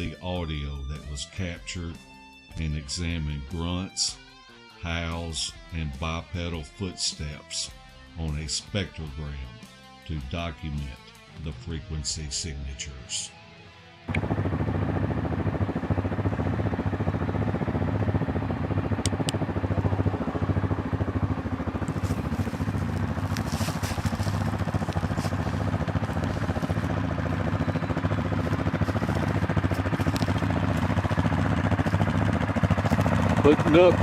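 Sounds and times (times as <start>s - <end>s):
atv engine running: 14.1s - 34.0s.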